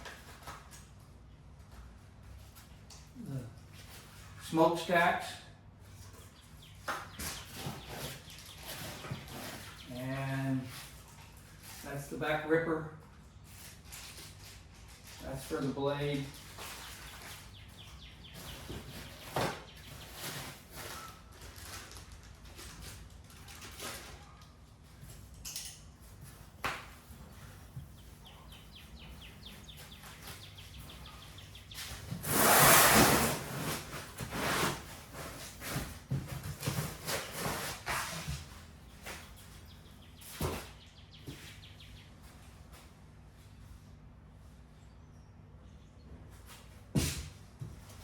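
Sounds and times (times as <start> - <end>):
loud packaging rustle: 18.4 - 24.4.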